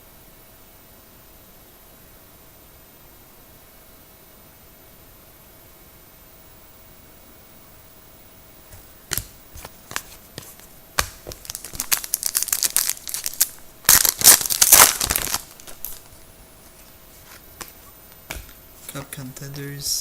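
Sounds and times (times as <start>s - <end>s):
foil wrapper tearing and crinkling: 9.1s - 16.2s.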